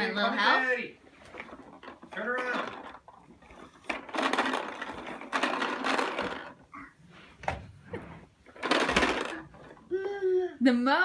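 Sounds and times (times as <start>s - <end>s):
push-toy lawnmower rattling: 1.1s - 6.8s, 8.4s - 10.0s.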